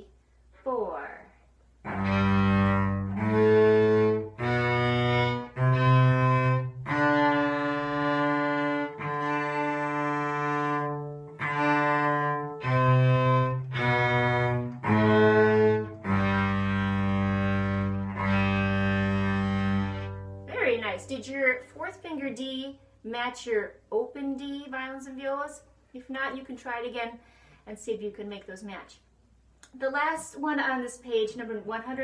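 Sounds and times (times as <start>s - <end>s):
bowed string instruments: 1.8s - 21.0s.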